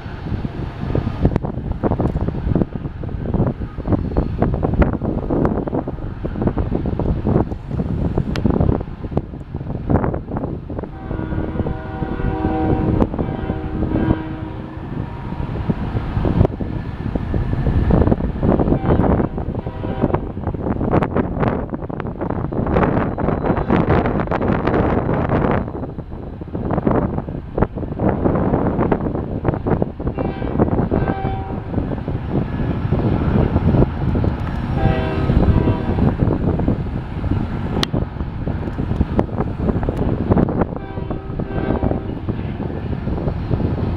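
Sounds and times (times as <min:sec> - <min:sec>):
steady rumble: 0:00.0 - 0:22.8, 0:24.1 - 0:43.9
wind buffeting microphone: 0:00.0 - 0:43.9
locomotive horn chord: 0:10.9 - 0:15.4, 0:18.7 - 0:20.3, 0:30.2 - 0:31.8, 0:34.7 - 0:36.2, 0:40.8 - 0:42.3.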